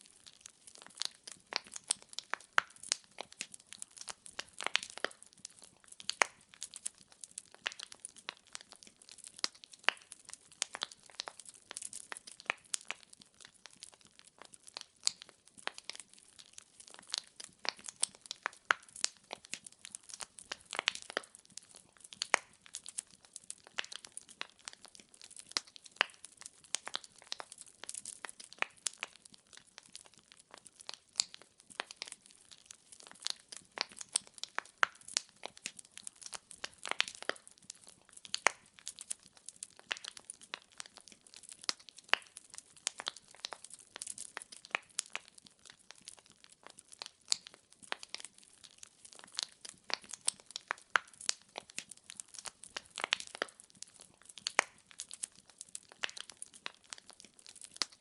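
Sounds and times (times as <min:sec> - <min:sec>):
firewood crackling: 0:00.0 - 0:58.0.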